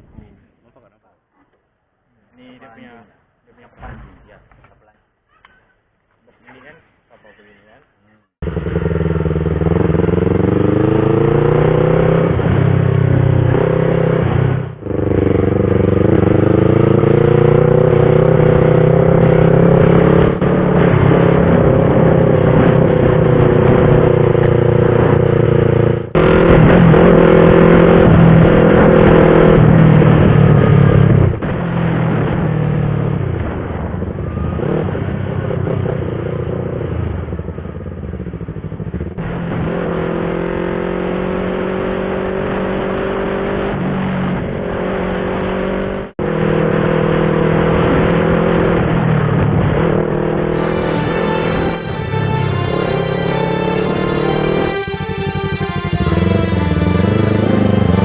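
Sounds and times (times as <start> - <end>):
motorcycle engine accelerating: 8.4 - 58.0.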